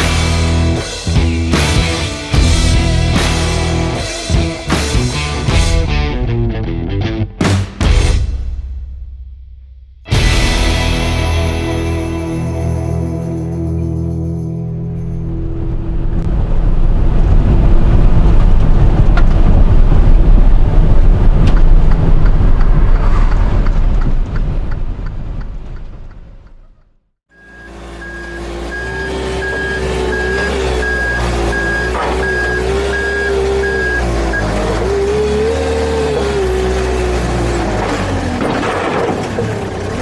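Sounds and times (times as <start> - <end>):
vehicle engine running: 0.0 - 6.6
loud rushing rumble: 0.0 - 26.4
reversing alarm beeping: 27.3 - 34.7.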